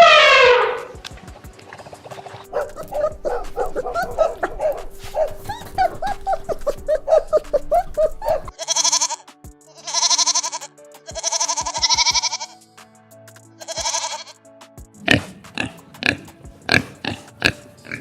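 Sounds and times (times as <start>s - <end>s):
short high yapping calls: 2.5s - 9.2s
goat bleating: 2.6s - 12.6s, 13.6s - 14.4s.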